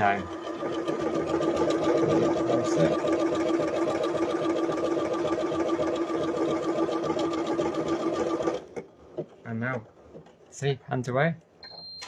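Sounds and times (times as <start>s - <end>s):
sewing machine stitching: 0.0s - 8.8s.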